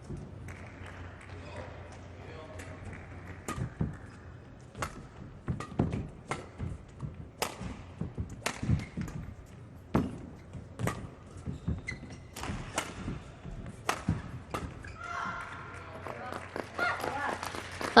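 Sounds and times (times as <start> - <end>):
racket hitting shuttlecock: 2.6 - 15.6.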